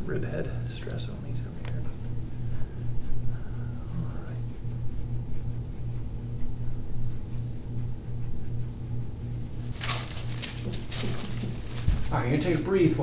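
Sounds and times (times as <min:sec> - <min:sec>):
pulsing low mechanical hum: 0:00.0 - 0:13.0
brief rustle: 0:09.7 - 0:12.2.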